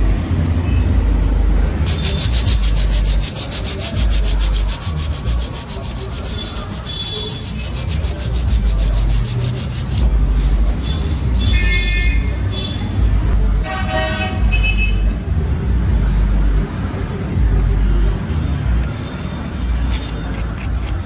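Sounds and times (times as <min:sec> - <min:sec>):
fast rhythmic scraping: 0:01.8 - 0:11.9.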